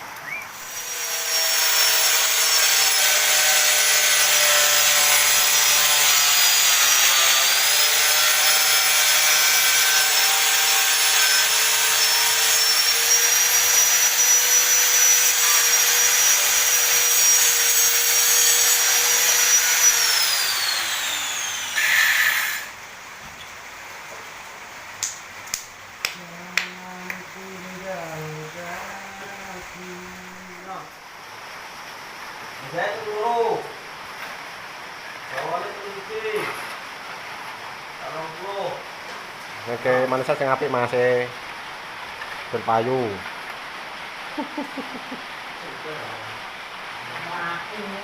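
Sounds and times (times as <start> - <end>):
electric power tool motor whining: 18.9 - 22.7.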